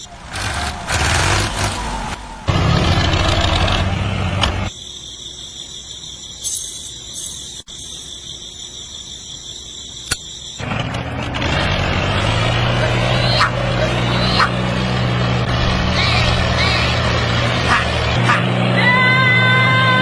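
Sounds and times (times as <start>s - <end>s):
engine running with low hum: 0.0s - 4.7s, 10.6s - 20.0s.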